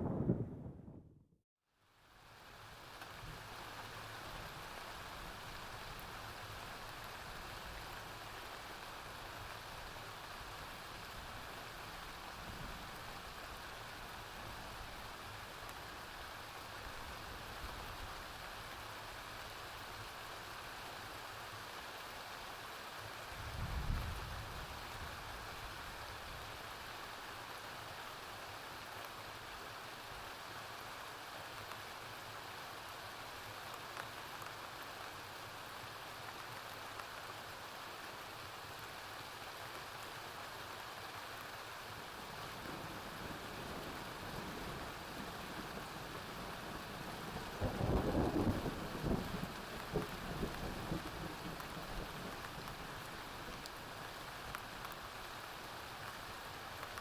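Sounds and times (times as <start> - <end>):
thunder rumble: 0.0 - 1.2, 42.9 - 53.2
steady rain falling: 1.8 - 57.0.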